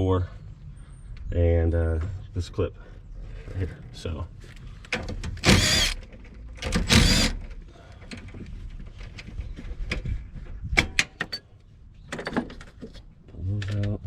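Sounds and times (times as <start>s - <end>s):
rasping bursts: 5.4s - 6.0s, 6.7s - 7.4s.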